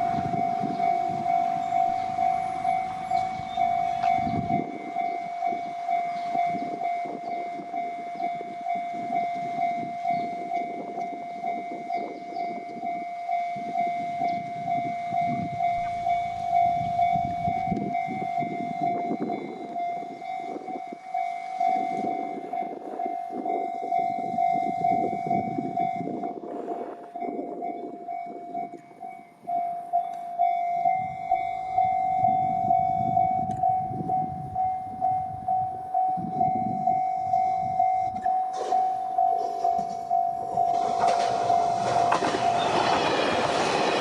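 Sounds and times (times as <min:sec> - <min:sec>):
level crossing alarm ringing: 0:00.0 - 0:44.0
train wheels clattering on rails: 0:38.1 - 0:44.0.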